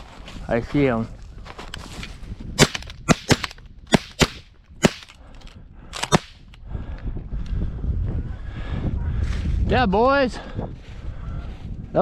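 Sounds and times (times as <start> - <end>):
shotgun blasts: 2.6 - 5.1, 6.0 - 6.5.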